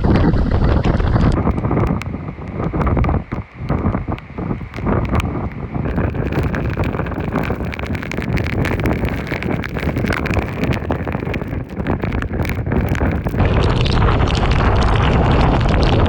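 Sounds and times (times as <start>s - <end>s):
wind buffeting microphone: 0.0s - 16.0s.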